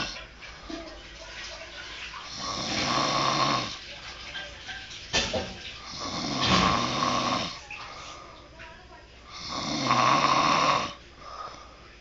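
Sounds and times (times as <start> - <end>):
woman snoring heavily: 2.4 - 3.7, 6.0 - 7.6, 9.3 - 11.0.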